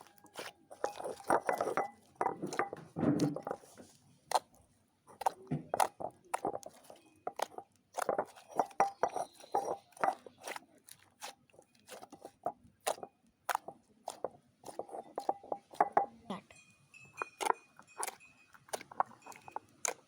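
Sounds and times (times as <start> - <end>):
slime popping and crackling: 0.0 - 2.6.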